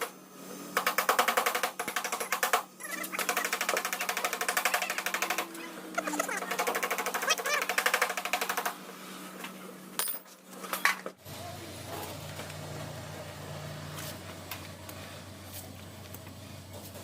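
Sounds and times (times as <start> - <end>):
rapid mechanical clicking: 0.8 - 8.8.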